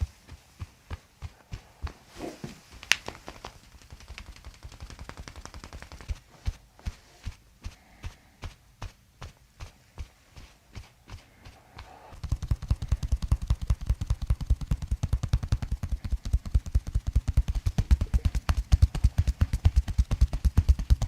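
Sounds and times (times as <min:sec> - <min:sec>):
percussion massager thumping: 0:00.0 - 0:21.0.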